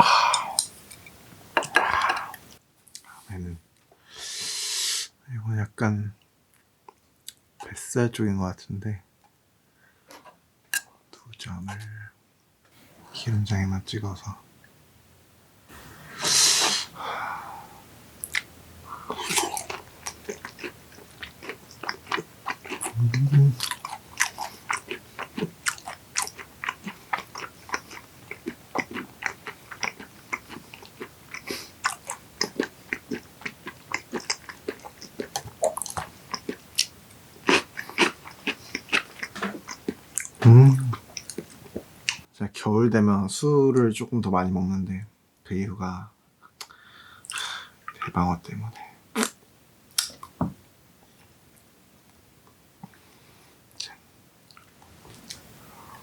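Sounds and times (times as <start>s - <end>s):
wet chewing: 18.2s - 42.3s.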